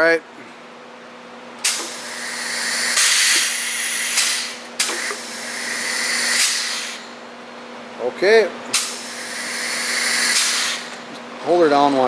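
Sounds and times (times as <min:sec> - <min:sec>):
compressed air hissing: 0:01.6 - 0:07.2, 0:08.7 - 0:11.1.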